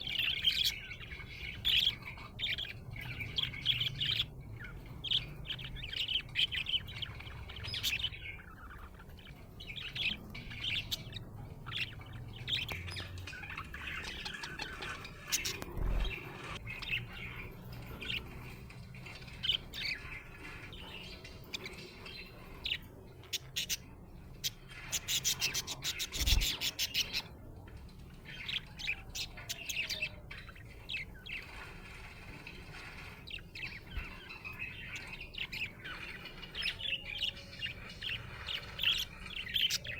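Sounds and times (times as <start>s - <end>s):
budgerigar chirping and warbling: 0.0s - 18.5s.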